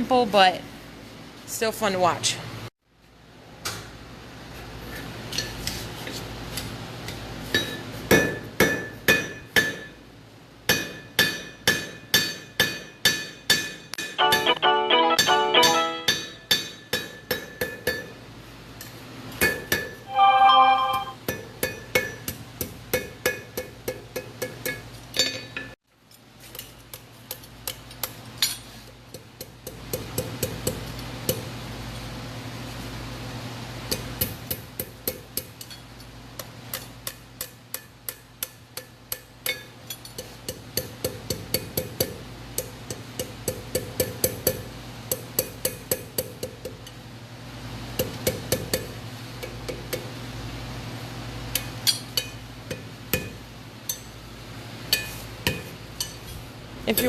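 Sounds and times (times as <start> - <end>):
hammer striking iron on anvil: 7.5 - 10.0, 10.7 - 14.5, 15.2 - 18.2, 19.4 - 20.0, 21.3 - 25.8, 36.4 - 46.8, 48.0 - 50.1, 51.6 - 54.1, 54.9 - 56.2.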